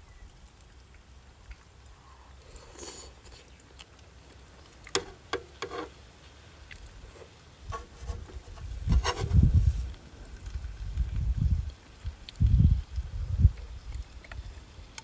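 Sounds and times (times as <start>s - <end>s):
light clicks and knocks: 4.9s - 5.9s
wind buffeting microphone: 6.8s - 14.6s.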